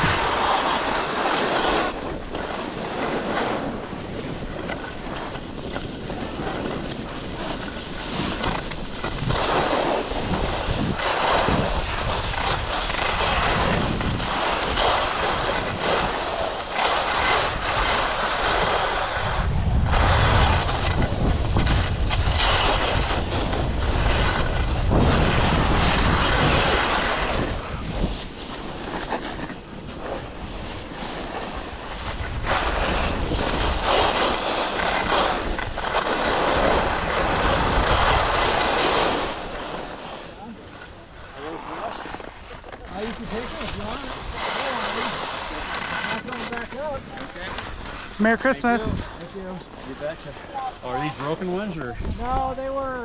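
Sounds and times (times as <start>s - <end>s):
wind buffeting microphone: 0.0s - 39.6s, 51.5s - 53.0s
skis scraping on hard snow: 0.0s - 53.0s.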